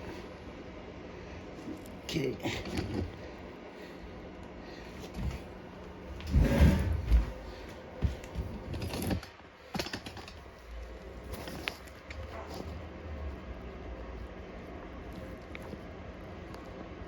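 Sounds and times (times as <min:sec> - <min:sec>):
mower parts clunking and rattling: 0:06.2 - 0:10.5.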